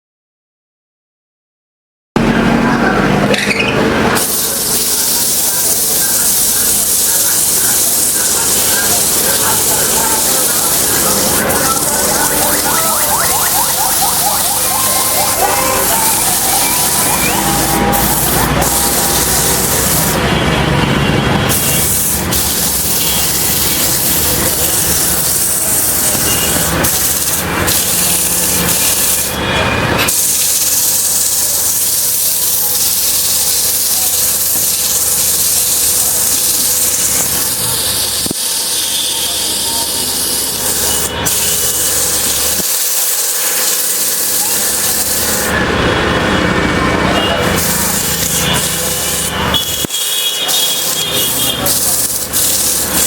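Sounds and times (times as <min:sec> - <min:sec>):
tool shaving spinning wood: 0:04.2 - 0:20.2, 0:50.4 - 0:53.0.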